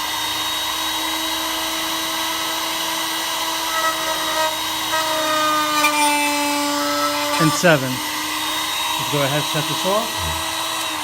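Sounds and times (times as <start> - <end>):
key cutting machine motor whining: 0.0 - 11.0.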